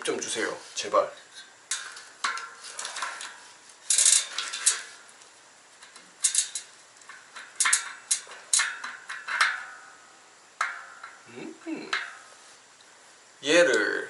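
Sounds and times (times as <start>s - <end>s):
tool clanking on metal sprockets: 1.7s - 5.0s, 6.2s - 9.8s.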